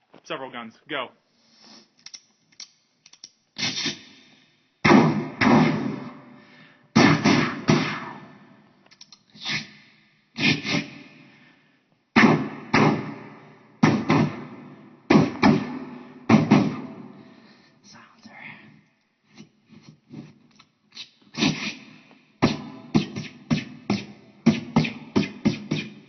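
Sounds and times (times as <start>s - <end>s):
man imitating gunshots with mouth: 3.6s - 6.3s, 6.9s - 8.5s, 9.4s - 11.4s, 12.2s - 17.1s, 21.3s - 26.0s.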